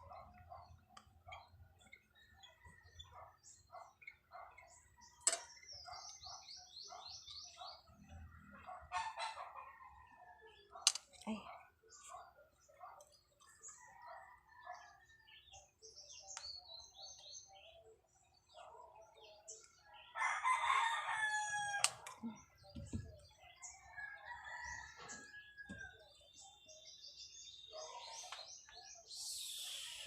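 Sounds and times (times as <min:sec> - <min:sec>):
small parts clicking and scraping: 0:10.8 - 0:11.3
rooster crowing: 0:20.2 - 0:21.9.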